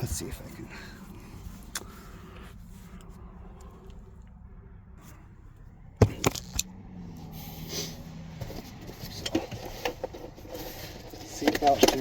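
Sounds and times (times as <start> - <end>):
seatbelt hardware clicks: 6.0 - 6.7.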